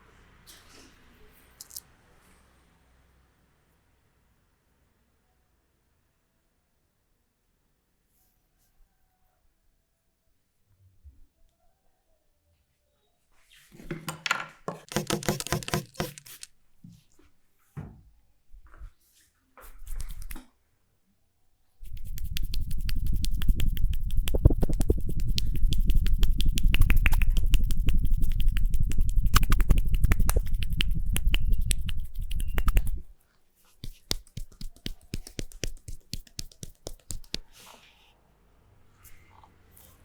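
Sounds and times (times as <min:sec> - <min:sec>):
hands slapping on body: 0:19.8 - 0:20.4, 0:21.8 - 0:33.1, 0:33.8 - 0:37.5.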